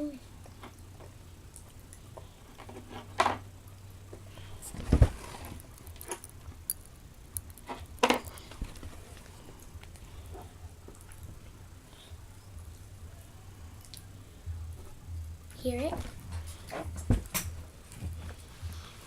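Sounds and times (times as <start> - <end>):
popping candy snapping: 5.6 - 10.1.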